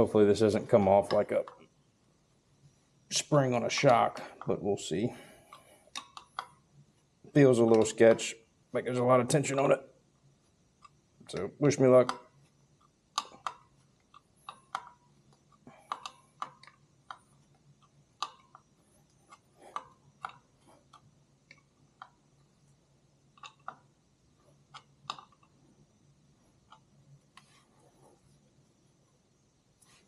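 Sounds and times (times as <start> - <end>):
faint low hum: 0.0 - 30.0
hand tools clicking and tapping: 7.7 - 8.0, 13.1 - 21.1.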